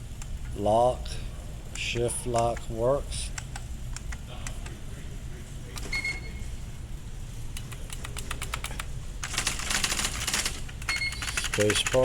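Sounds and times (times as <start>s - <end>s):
low steady hum: 0.0s - 12.0s
typewriter clacks: 7.6s - 12.0s.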